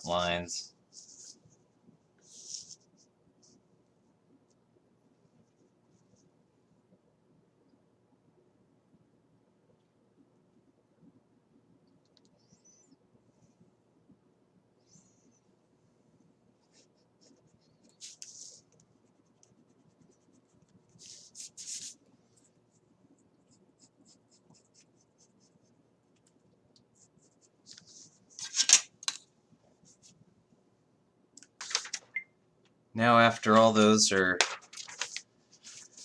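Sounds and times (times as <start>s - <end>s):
pencil scratching on paper: 16.6s - 25.8s.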